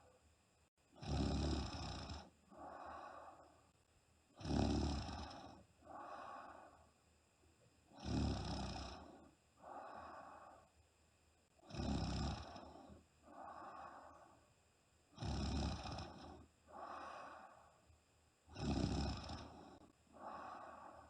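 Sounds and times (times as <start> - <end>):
woman snoring: 0.9 - 3.5, 4.3 - 6.8, 7.9 - 10.7, 11.6 - 14.4, 15.1 - 17.7, 18.5 - 21.0
soft breath: 2.1 - 3.9, 5.1 - 7.1, 8.9 - 10.8, 12.4 - 14.6, 15.8 - 18.0, 19.1 - 21.0.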